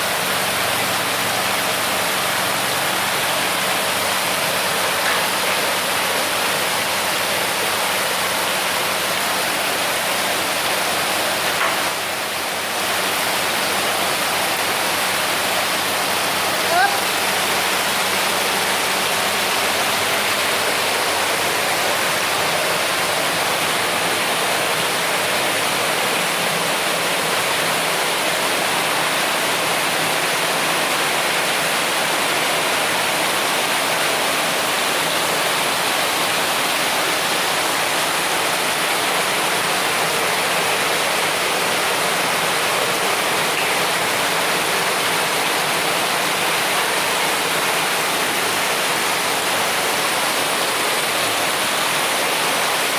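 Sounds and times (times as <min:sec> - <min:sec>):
water pouring over waterfall: 0:00.0 - 0:52.9.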